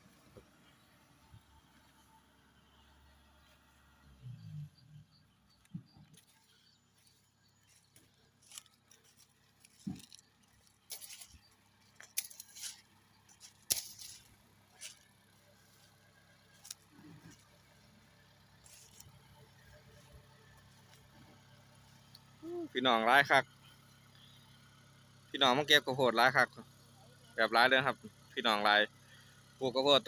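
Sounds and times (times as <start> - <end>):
dry corn leaves rustling: 6.2 - 17.5, 18.6 - 19.2.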